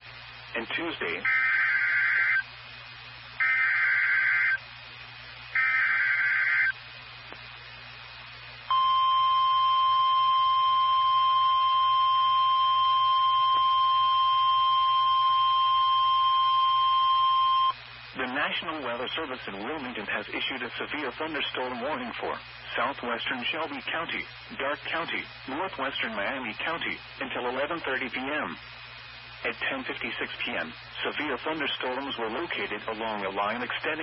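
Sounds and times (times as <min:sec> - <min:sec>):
steady warning alarm tone: 0:01.2 - 0:02.4, 0:03.4 - 0:04.6, 0:05.6 - 0:06.8, 0:08.7 - 0:17.8
buzzing data bursts: 0:05.5 - 0:06.8.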